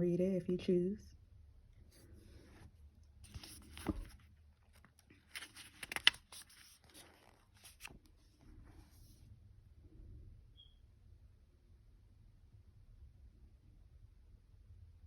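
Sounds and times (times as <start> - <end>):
cards and paper rustling: 3.2 - 9.1.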